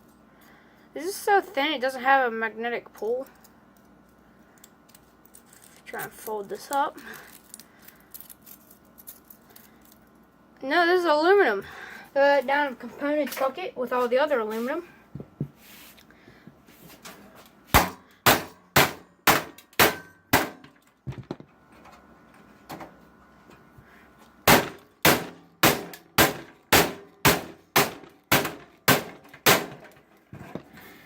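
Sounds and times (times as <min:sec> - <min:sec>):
hammer clanging on metal: 0:17.8 - 0:20.8.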